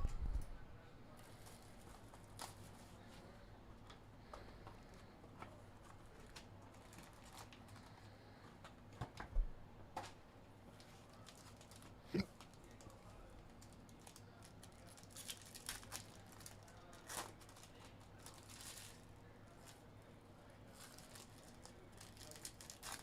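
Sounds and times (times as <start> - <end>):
plastic wrapper crinkling and tearing: 6.1 - 7.9, 11.0 - 19.8, 20.8 - 23.0.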